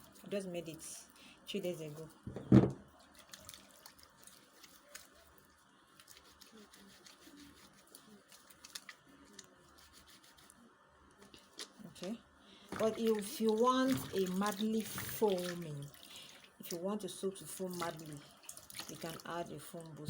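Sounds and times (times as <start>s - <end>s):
hands lathering soap: 3.0s - 10.6s.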